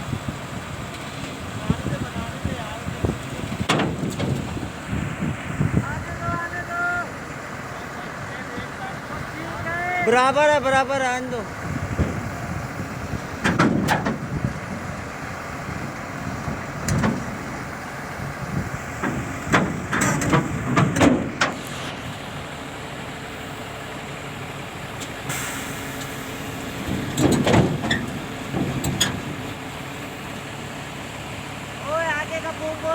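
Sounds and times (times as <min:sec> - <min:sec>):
diesel engine running: 0:00.0 - 0:32.9
metallic clanks and squeaks of tracks: 0:19.0 - 0:21.6, 0:25.0 - 0:29.6.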